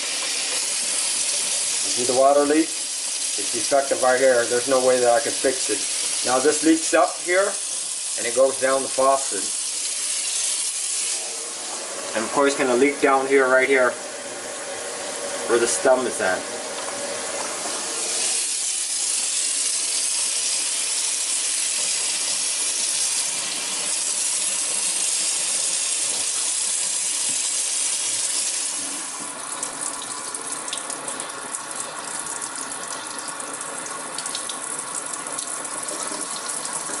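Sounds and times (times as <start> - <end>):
faucet running into sink: 0.0 - 37.0.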